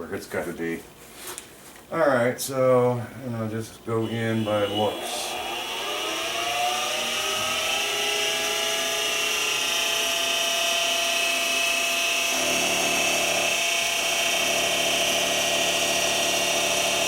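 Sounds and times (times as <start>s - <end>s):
milling machine spindle whine: 4.0s - 17.0s.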